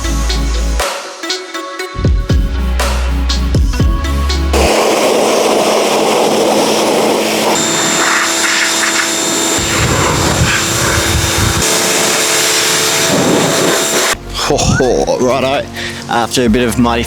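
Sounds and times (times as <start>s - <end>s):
pressure washer motor whine: 4.5s - 14.2s
spray hissing: 4.5s - 14.2s.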